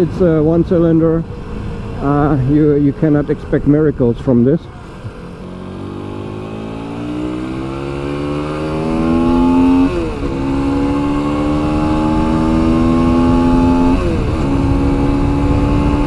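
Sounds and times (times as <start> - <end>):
motorcycle engine accelerating: 4.8 - 16.0.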